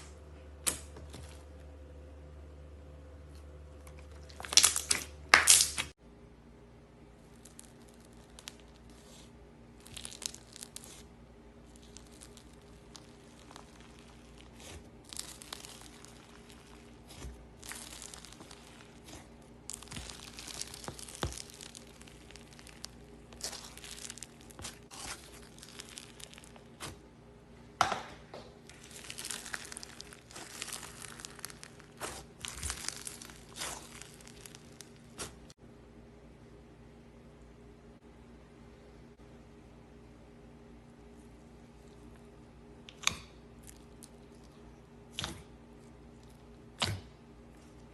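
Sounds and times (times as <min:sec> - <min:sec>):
faint steady hum: 0:00.0 - 0:47.9
slime crackling and popping: 0:04.2 - 0:05.9, 0:07.2 - 0:27.0, 0:28.7 - 0:35.5.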